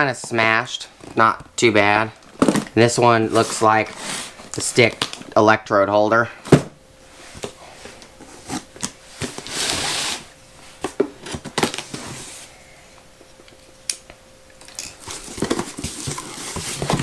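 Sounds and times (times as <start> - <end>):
packaging crinkling and rustling: 0.3 - 5.3, 8.2 - 12.2, 14.7 - 17.0.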